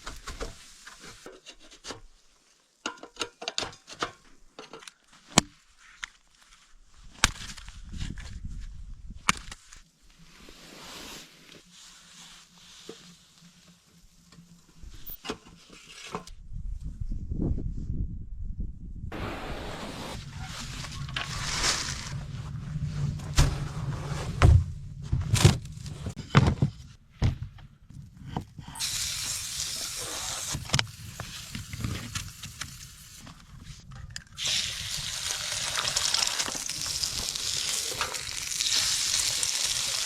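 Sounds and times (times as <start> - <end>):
food sizzling in a pan: 34.5 - 40.0.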